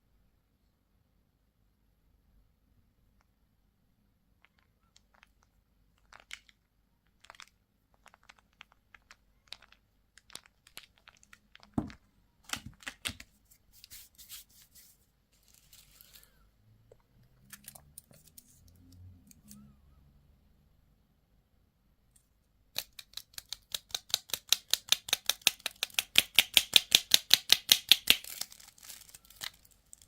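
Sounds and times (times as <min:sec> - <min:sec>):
candy wrappers crinkling: 0:04.4 - 0:13.2, 0:15.4 - 0:16.4, 0:27.6 - 0:30.0.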